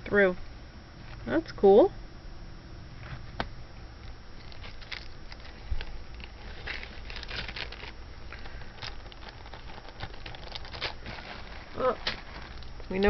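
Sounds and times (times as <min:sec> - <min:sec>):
plastic bag crinkling: 0:04.4 - 0:13.0.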